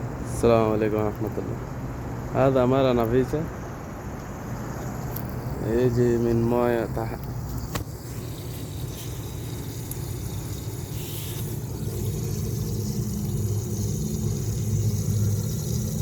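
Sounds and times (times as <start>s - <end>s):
motor rumbling: 3.7s - 16.0s.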